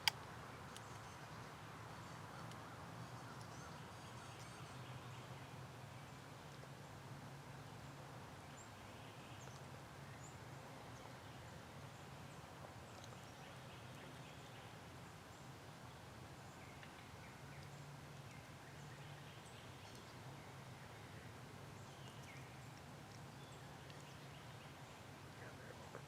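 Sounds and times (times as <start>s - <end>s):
faint songbird chirps: 0.0s - 6.2s, 8.5s - 26.0s
faint ticks: 22.0s - 24.2s.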